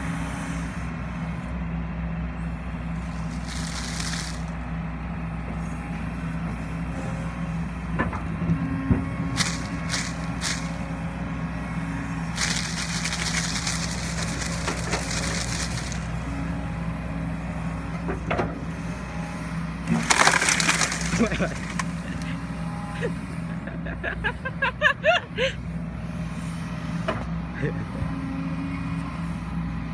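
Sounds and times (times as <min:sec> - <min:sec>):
excavator diesel engine running: 0:00.0 - 0:29.9
tree cracking and splintering: 0:03.0 - 0:04.6, 0:09.4 - 0:10.8, 0:12.4 - 0:16.2, 0:19.9 - 0:22.4.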